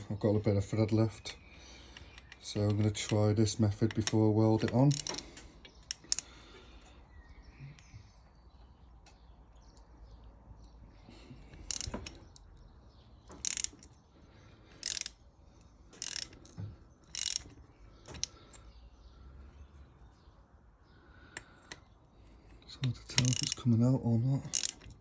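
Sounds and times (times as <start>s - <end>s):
hand ratchet clicking: 3.9s - 6.3s, 11.6s - 12.4s, 13.3s - 14.0s, 14.8s - 15.2s, 16.0s - 18.4s, 23.0s - 23.7s, 24.4s - 25.0s.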